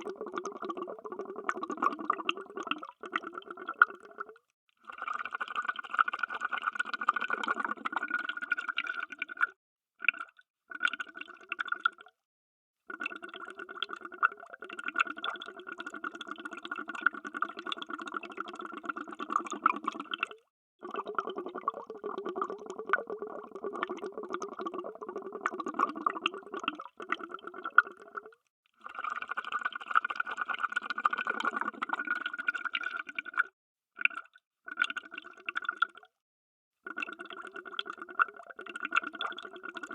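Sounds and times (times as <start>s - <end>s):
underwater bubbles streaming: 0.0s - 4.4s, 6.6s - 9.4s, 13.0s - 28.4s, 30.6s - 33.4s.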